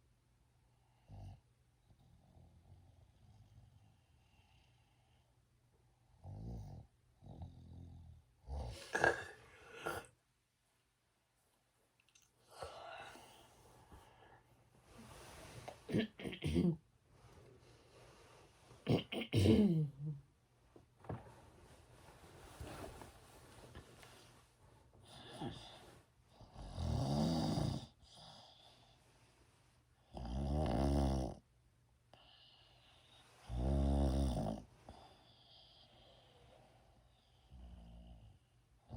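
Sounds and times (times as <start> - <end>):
person snoring: 8.5 - 10.1, 26.5 - 28.4, 30.1 - 31.4, 33.5 - 34.7
faint breath sounds: 12.4 - 15.9, 21.3 - 26.7, 32.1 - 33.7, 34.6 - 38.7.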